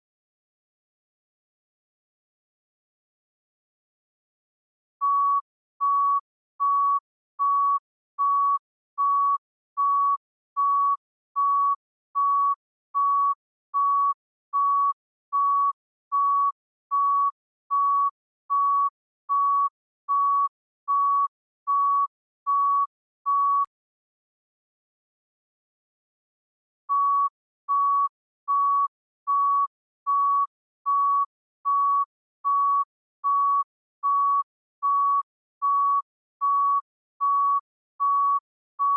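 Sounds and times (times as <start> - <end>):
heart monitor beeping: 5.0 - 23.7, 26.9 - 38.9.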